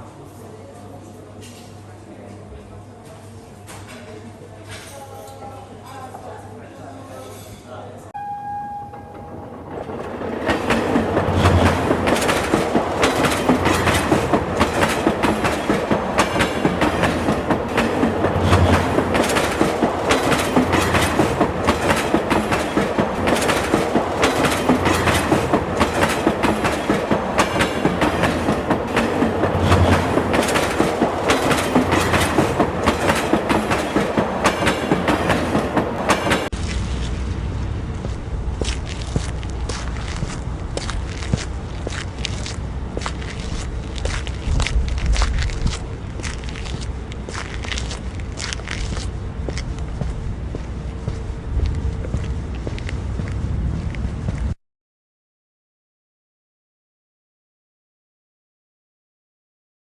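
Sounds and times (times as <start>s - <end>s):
train rumble: 8.2s - 54.6s
train wheels clattering on rails: 8.6s - 36.6s.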